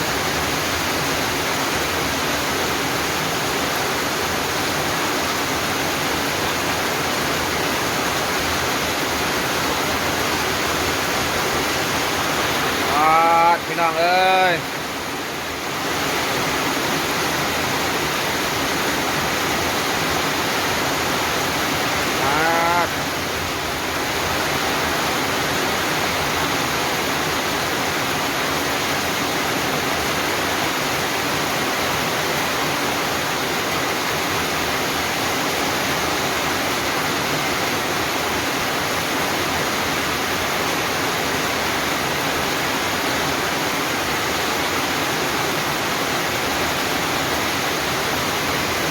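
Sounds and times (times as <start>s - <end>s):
heavy rain falling: 0.0s - 48.9s
short voice: 12.8s - 14.6s, 22.1s - 23.0s.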